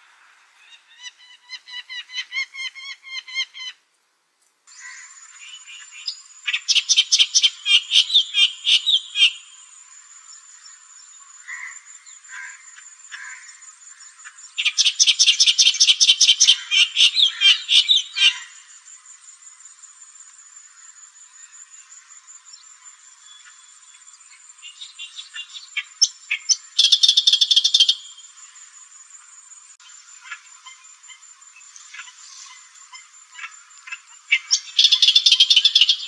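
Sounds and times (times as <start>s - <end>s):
reed warbler singing: 5.3s - 9.7s, 22.6s - 28.7s, 29.8s - 36.0s.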